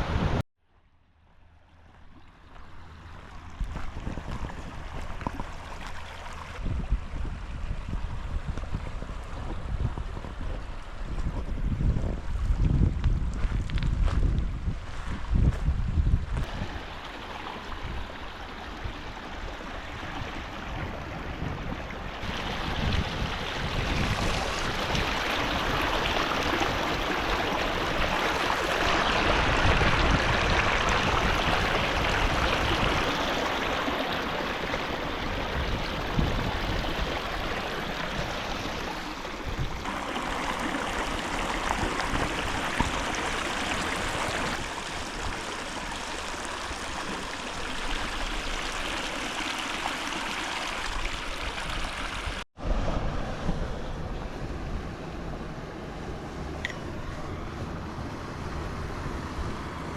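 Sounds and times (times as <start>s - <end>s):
river water rushing over rocks: 22.0s - 52.4s.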